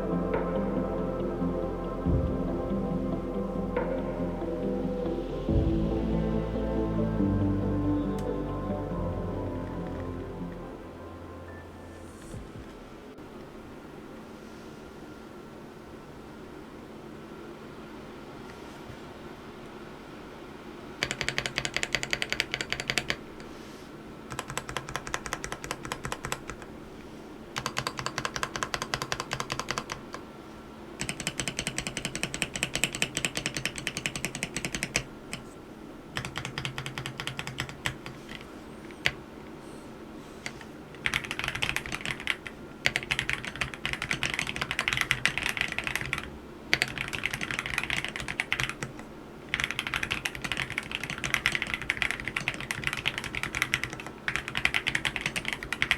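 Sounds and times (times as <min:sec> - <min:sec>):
fast mechanical keyboard typing: 0:21.0 - 0:23.2, 0:24.3 - 0:26.7, 0:27.6 - 0:30.2, 0:31.0 - 0:35.5, 0:36.2 - 0:39.2, 0:40.4 - 0:55.9.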